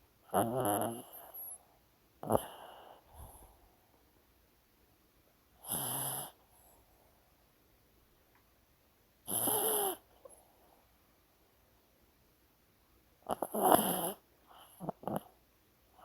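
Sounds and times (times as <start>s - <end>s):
dog snoring: 0.3s - 1.6s, 2.2s - 3.4s, 5.6s - 6.4s, 9.2s - 10.1s, 13.2s - 15.4s.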